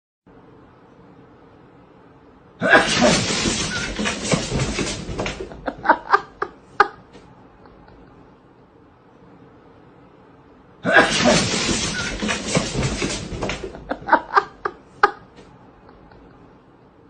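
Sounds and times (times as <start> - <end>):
person laughing hard: 5.5 - 7.1, 13.7 - 16.4.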